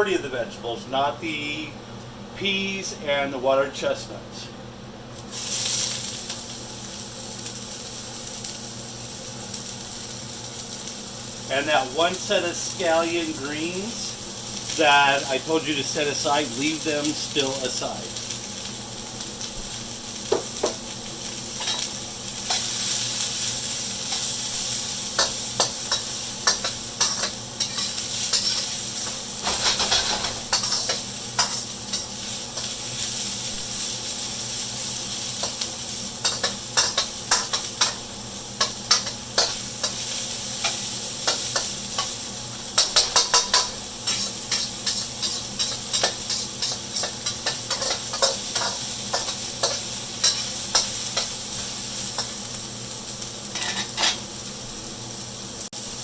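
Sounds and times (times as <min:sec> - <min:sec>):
vegetables sizzling in hot oil: 0:05.1 - 0:56.0
utensil clacking and scraping wok: 0:21.6 - 0:33.3, 0:34.2 - 0:52.5, 0:53.5 - 0:54.3.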